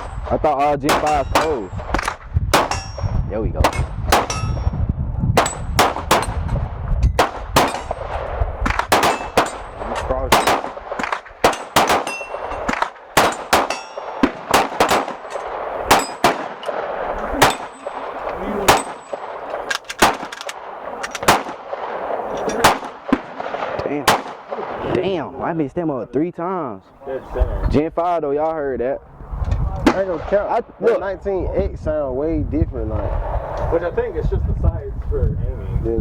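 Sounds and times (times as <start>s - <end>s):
pistol shots: 0.0s - 4.7s, 5.4s - 6.5s, 7.2s - 25.0s
other gunfire: 5.3s - 25.0s
steel targets ringing: 11.5s - 14.3s, 15.1s - 16.8s, 17.4s - 19.6s.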